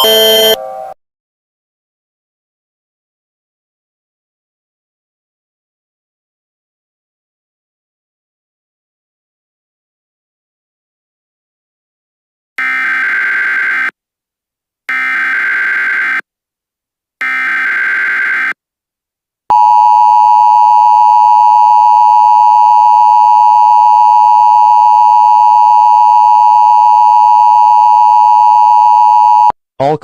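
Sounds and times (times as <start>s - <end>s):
digital data tone bursts: 0.0s - 0.8s
steady attention tone: 0.0s - 1.0s.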